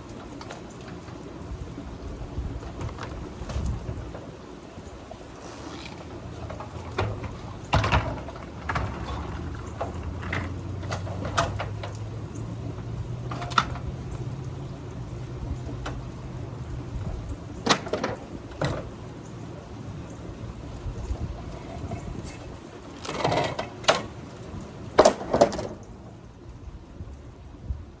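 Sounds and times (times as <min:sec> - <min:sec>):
junk clattering in a dumpster: 0:05.4 - 0:14.1, 0:17.0 - 0:19.0, 0:24.9 - 0:26.2.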